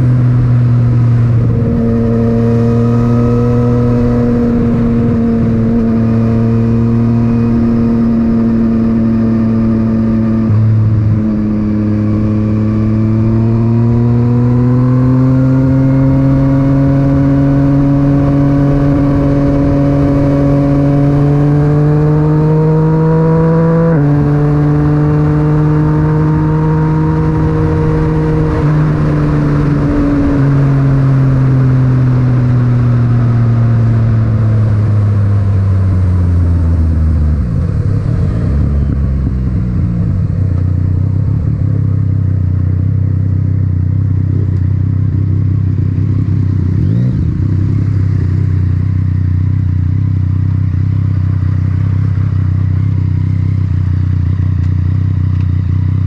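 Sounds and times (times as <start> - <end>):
wind rush: 0.0 - 14.6, 32.6 - 42.0
motorcycle engine revving: 0.0 - 56.0.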